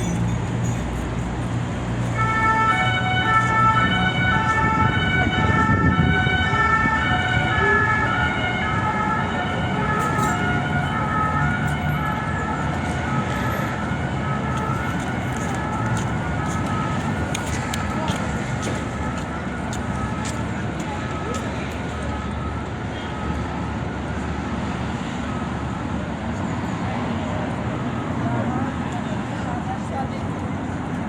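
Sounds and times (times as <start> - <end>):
street traffic: 0.0 - 31.0
two-tone siren: 2.0 - 26.2.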